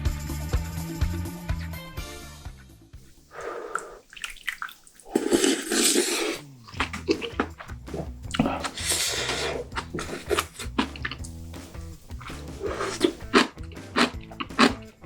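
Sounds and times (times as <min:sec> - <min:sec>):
wet noodle slurps: 0:03.3 - 0:14.8.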